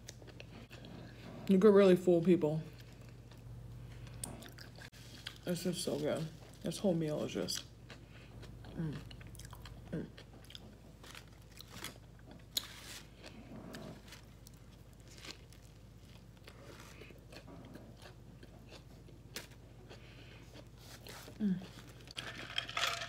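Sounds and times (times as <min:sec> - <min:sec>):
chewing and biting sandwich: 0:07.6 - 0:22.2.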